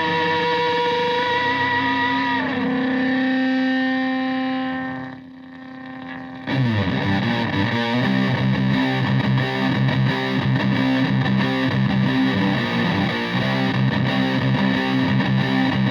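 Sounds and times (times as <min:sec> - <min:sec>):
fuzzed electric guitar: 0:00.0 - 0:15.9.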